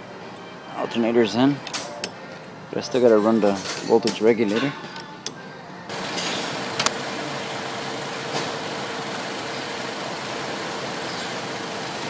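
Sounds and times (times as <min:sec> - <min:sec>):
alternator whine: 0:05.7 - 0:12.0
car engine idling: 0:06.6 - 0:12.0.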